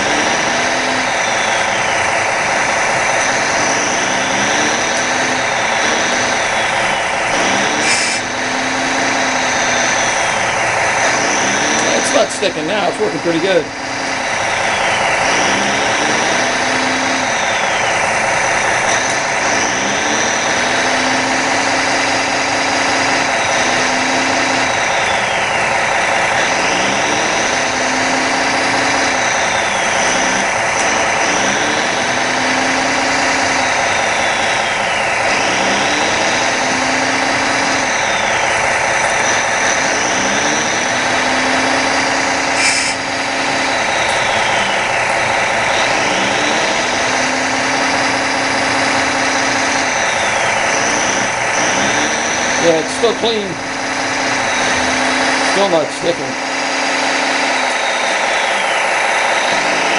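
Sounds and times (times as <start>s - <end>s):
hydraulic whine: 0.0s - 59.9s
simulated diesel engine sound: 0.0s - 59.9s.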